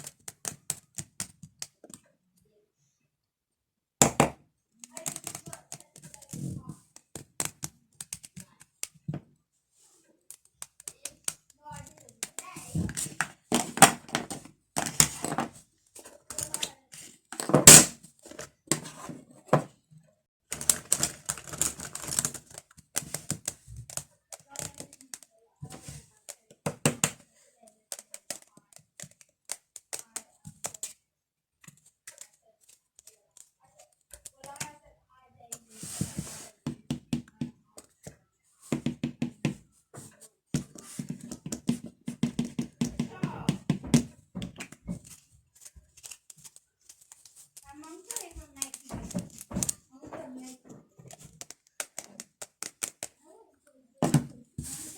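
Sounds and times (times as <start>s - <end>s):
fingernails tapping on pencil case: 36.7s - 39.6s, 40.5s - 45.0s.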